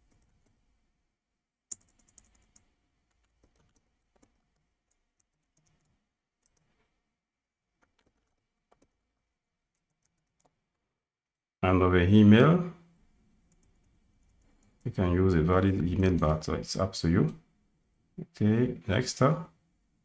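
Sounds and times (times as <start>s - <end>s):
computer keyboard keystrokes: 1.7s - 6.7s, 7.8s - 9.0s.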